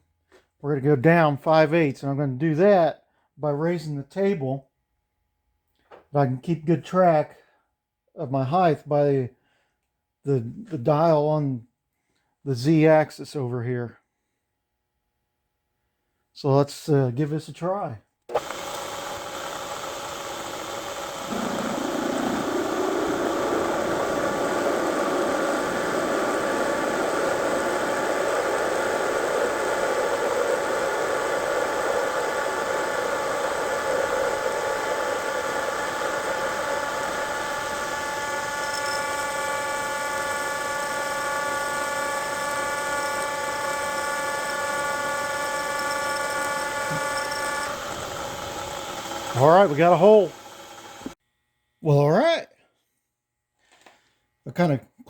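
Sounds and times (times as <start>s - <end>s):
drill cutting into steel: 18.3s - 51.2s
steady multi-tone whine: 21.2s - 51.2s.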